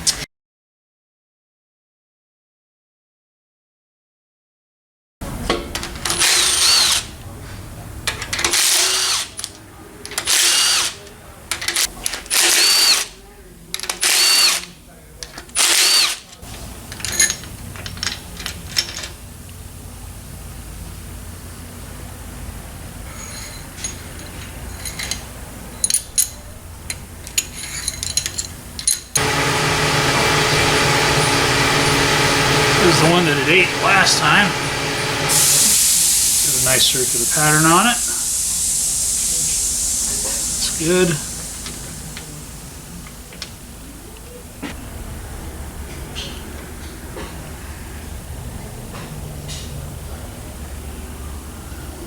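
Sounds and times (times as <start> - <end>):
metal tools clinking on engine block: 5.5 - 19.3, 23.0 - 34.4
cordless power driver whining: 5.8 - 7.3, 8.4 - 11.1, 11.7 - 13.1, 13.9 - 14.7, 15.4 - 17.2, 29.2 - 44.8
loud machine hum: 29.2 - 52.0.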